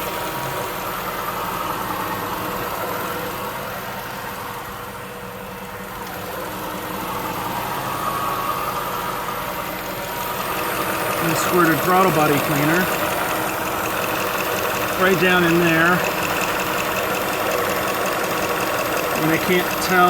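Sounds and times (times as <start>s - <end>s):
car engine idling: 0.0s - 20.0s.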